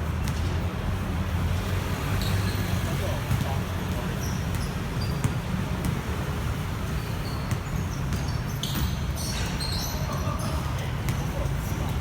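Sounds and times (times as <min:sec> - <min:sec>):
roadside traffic rumble: 0:00.0 - 0:12.0.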